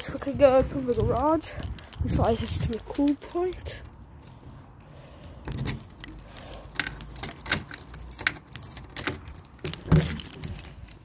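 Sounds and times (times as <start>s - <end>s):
keys jangling: 0.0s - 11.0s.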